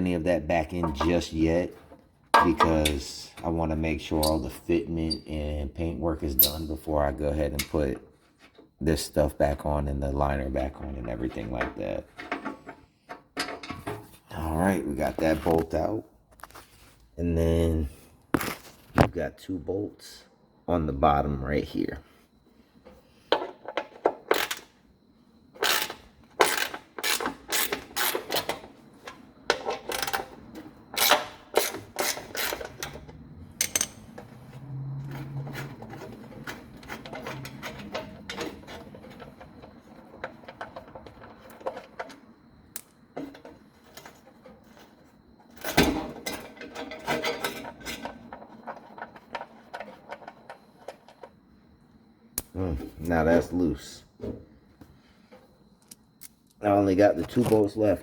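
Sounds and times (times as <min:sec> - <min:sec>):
ratchet and wrench clicking: 0:25.6 - 0:28.5.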